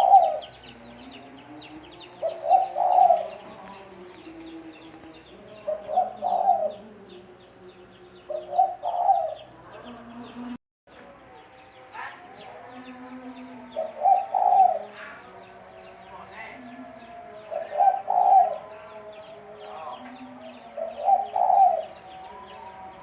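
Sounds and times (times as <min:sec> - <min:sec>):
dove cooing: 0:00.0 - 0:07.4, 0:08.2 - 0:10.6, 0:12.6 - 0:15.4, 0:16.3 - 0:22.2
faint bird chirping: 0:00.0 - 0:23.0.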